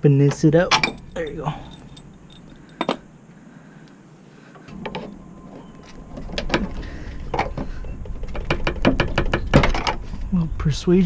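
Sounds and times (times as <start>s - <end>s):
metal parts knocking and scraping: 0.3s - 3.2s, 5.8s - 10.1s.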